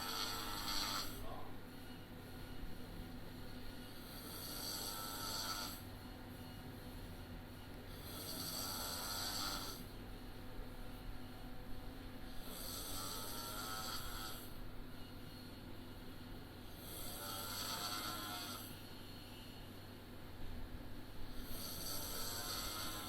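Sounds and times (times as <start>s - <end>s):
man snoring: 0.0s - 1.2s, 4.0s - 5.8s, 7.9s - 9.9s, 12.4s - 14.6s, 16.7s - 18.8s, 21.3s - 23.0s
steady low hum: 0.0s - 23.0s.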